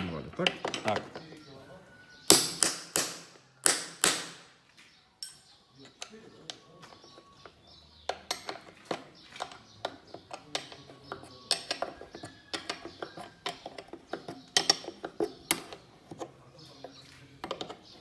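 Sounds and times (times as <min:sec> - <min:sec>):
spanners clicking and clanking on metal: 0:00.0 - 0:01.4, 0:05.2 - 0:18.0.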